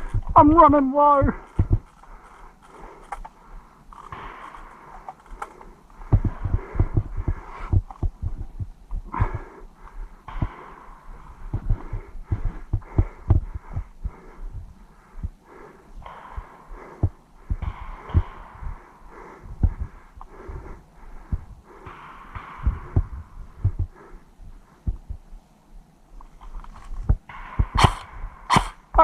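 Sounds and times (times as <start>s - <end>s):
footsteps and gear knocking: 0.0s - 9.4s, 11.3s - 15.4s, 22.5s - 24.0s, 24.8s - 25.3s, 26.2s - 28.1s
heavy breathing: 1.4s - 29.0s.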